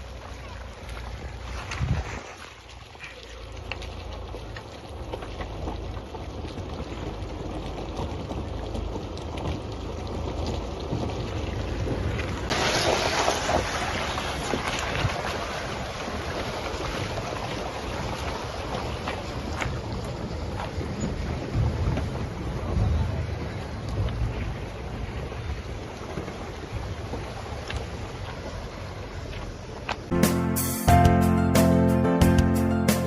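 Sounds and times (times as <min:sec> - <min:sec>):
vehicle rumble on rough ground: 0:00.0 - 0:30.2
wind buffeting microphone: 0:01.1 - 0:02.3, 0:05.6 - 0:29.2.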